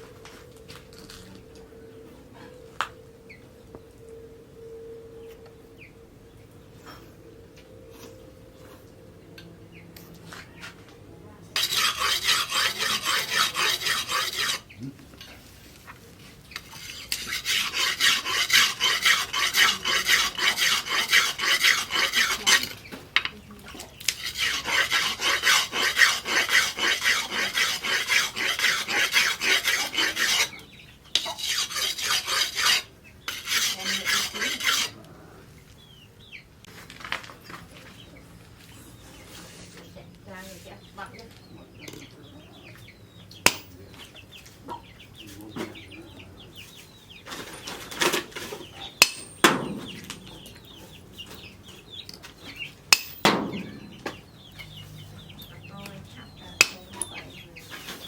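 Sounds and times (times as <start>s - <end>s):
knife rasping on sharpening stone: 11.6s - 14.6s, 16.6s - 22.8s, 24.0s - 30.6s, 31.2s - 35.0s, 56.6s - 57.1s.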